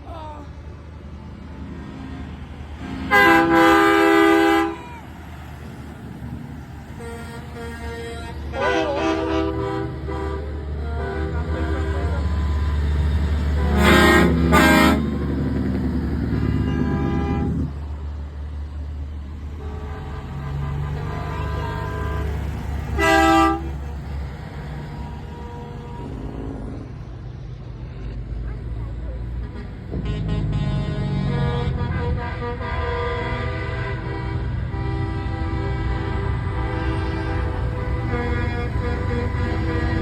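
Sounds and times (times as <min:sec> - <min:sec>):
diesel engines rumbling: 0:00.0 - 0:40.0
truck air horns: 0:02.8 - 0:17.8, 0:19.5 - 0:26.9, 0:29.3 - 0:40.0.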